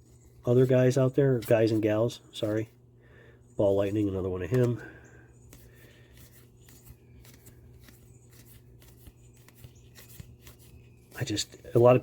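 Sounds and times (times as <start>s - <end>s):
trading cards clicking and sliding: 4.4s - 4.8s, 5.4s - 12.0s.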